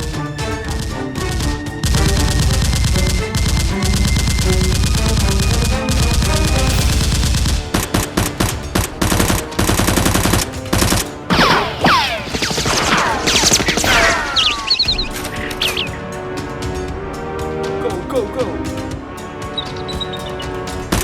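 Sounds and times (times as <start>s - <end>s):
background music: 0.0s - 21.0s
rapid automatic gunfire: 0.6s - 11.1s.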